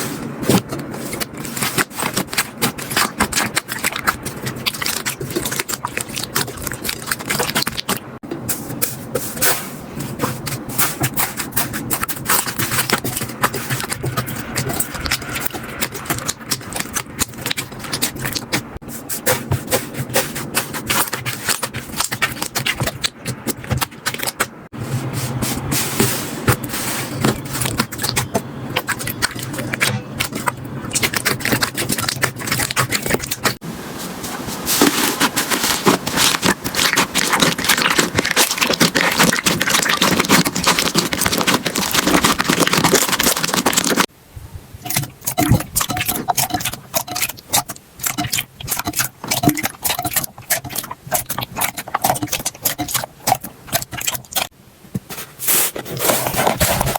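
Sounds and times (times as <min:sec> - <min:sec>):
slime crackling and popping: 0:01.6 - 0:08.2, 0:35.1 - 0:44.1.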